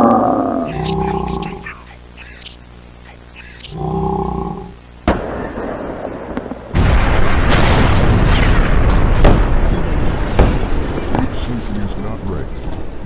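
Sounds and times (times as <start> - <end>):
deep creature roar: 0.0 - 1.7, 3.7 - 4.8
gunfire and explosions: 5.0 - 13.0
sharp bang: 6.8 - 12.0.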